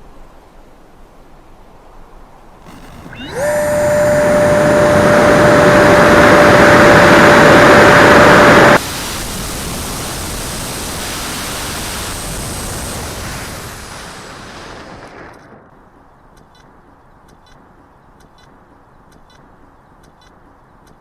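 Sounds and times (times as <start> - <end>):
model jet motor whine: 2.6 - 13.9
rush of air: 2.6 - 15.8.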